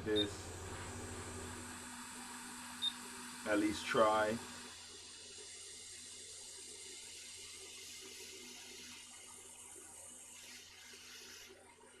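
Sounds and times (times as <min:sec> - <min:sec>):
hiss of hot air blower: 0:03.4 - 0:09.4, 0:10.2 - 0:11.6.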